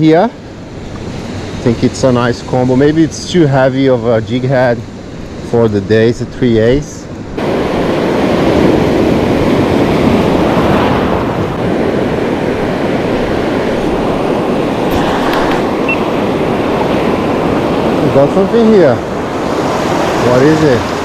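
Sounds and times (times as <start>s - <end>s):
wind: 0.0s - 21.0s
surf rushing: 7.4s - 21.0s.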